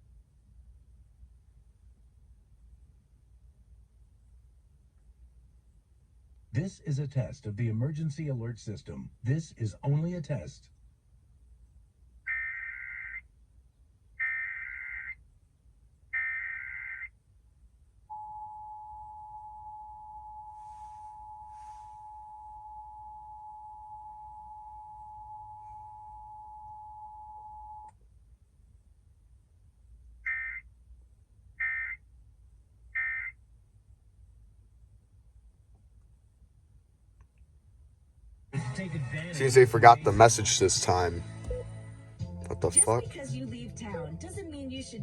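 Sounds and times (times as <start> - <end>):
steady alert attention tone: 42.5 - 43.0.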